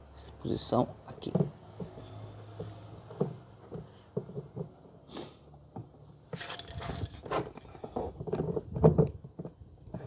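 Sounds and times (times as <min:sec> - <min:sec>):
plastic and metal parts clattering: 0:06.3 - 0:10.0.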